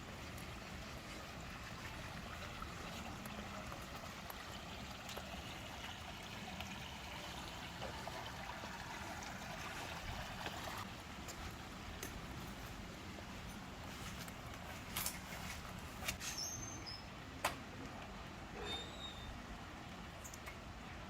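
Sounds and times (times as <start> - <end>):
water trickling and splashing: 0.0 - 16.9
water drips: 0.1 - 12.4.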